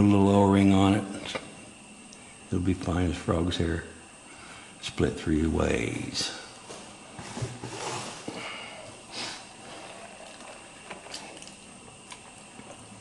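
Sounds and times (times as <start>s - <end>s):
soft rustles: 6.6s - 8.6s.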